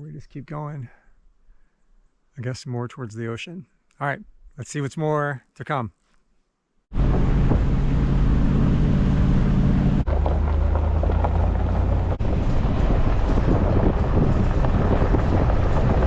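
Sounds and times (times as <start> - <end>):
pickup truck engine and road noise: 6.9 - 16.0.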